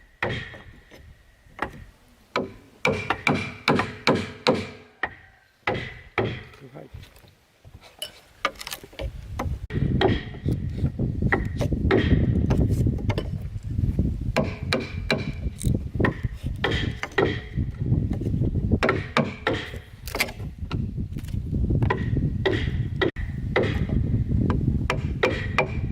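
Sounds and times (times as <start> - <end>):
hand tools chopping wood: 0.2 - 0.8, 2.4 - 6.6, 8.4 - 10.7, 11.3 - 13.4, 14.4 - 17.6, 18.8 - 20.5, 21.8 - 24.0, 24.9 - 25.9.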